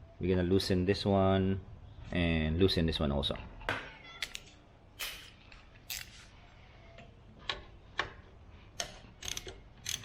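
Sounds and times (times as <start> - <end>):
hand tools clicking on metal: 8.8 - 10.0.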